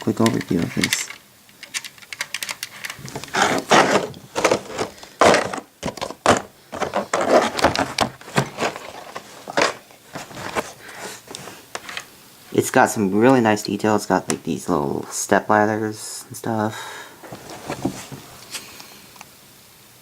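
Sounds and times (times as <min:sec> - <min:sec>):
plastic model clicking and tapping: 0:00.2 - 0:03.0.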